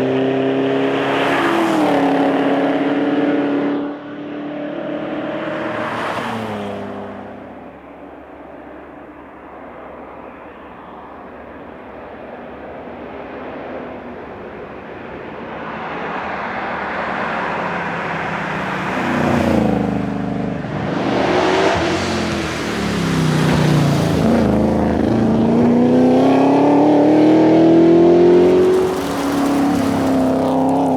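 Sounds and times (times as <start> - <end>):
race car engine at speed: 0.0 - 9.7, 12.5 - 30.9.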